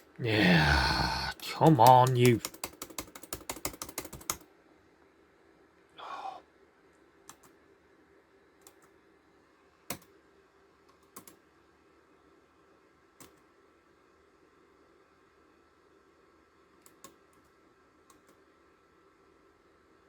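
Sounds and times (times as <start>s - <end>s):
computer keyboard typing: 1.3s - 4.4s, 11.1s - 11.4s.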